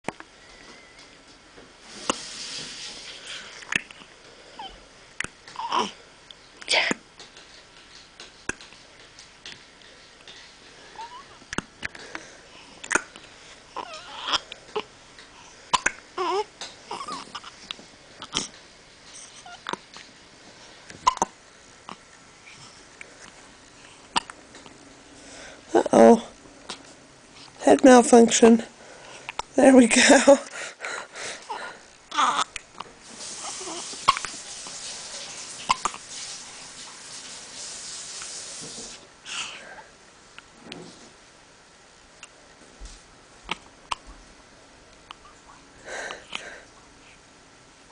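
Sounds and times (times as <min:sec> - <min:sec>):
person hiccuping: 0:21.0 - 0:21.4.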